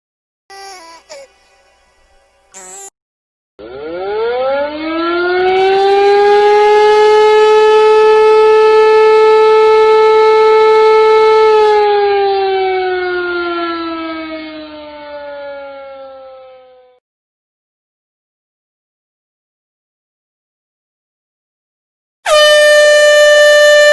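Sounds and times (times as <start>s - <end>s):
siren wailing: 3.6s - 17.0s.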